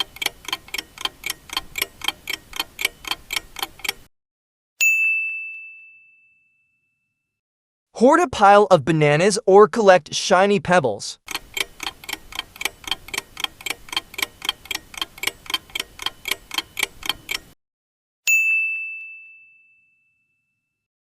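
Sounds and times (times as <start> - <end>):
clock-like ticks: 0.0 - 4.1, 11.3 - 17.6
bell ding: 4.8 - 7.3, 18.3 - 20.8.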